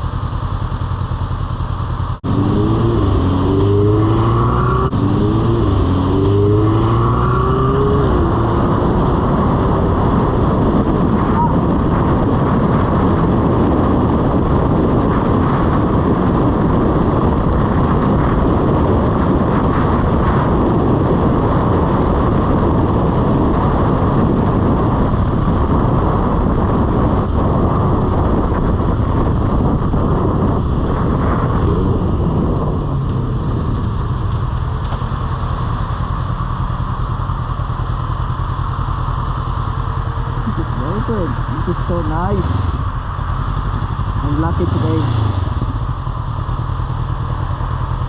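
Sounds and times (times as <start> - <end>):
motorcycle engine: 0.0 - 48.0
traffic: 0.0 - 48.0
wind rushing on microphone: 2.0 - 48.0.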